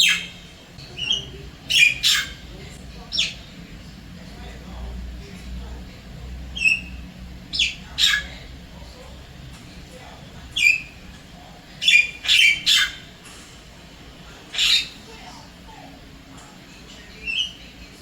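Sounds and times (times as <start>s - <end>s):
myna bird calling: 0.0s - 3.6s, 6.5s - 9.0s, 10.4s - 13.3s, 14.4s - 15.2s, 17.1s - 18.0s.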